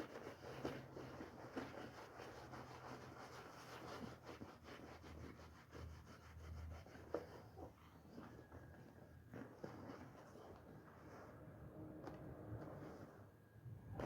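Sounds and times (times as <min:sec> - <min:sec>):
scrub brush rubbing wet rug: 0:00.0 - 0:08.6.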